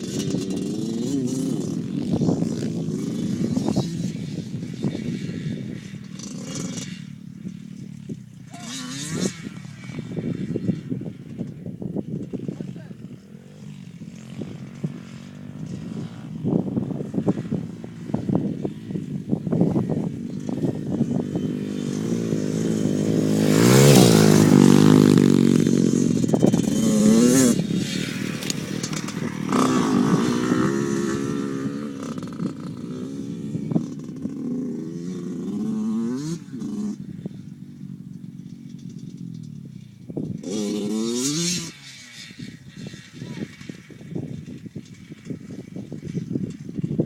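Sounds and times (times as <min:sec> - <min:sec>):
dirt bike engine revving: 0:00.0 - 0:47.0.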